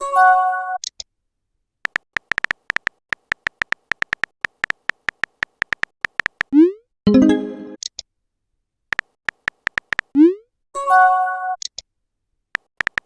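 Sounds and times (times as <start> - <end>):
phone keyboard typing clicks: 1.8 - 6.6, 8.9 - 10.2, 12.6 - 13.0.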